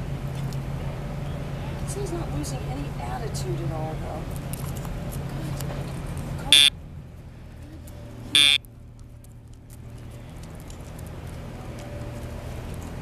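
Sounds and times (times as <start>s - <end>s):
loud electronic beeps: 6.5s - 6.7s, 8.4s - 8.6s.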